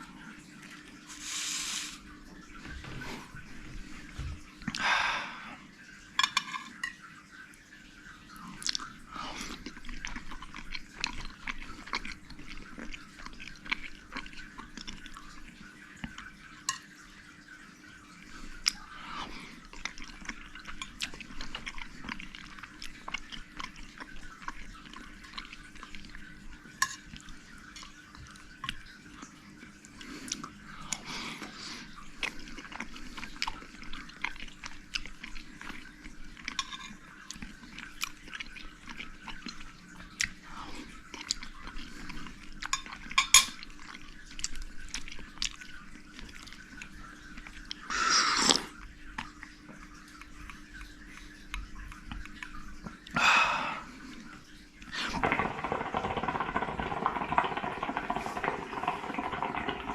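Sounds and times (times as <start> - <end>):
person chewing food: 8.4 - 16.4, 18.5 - 26.3, 29.9 - 49.5.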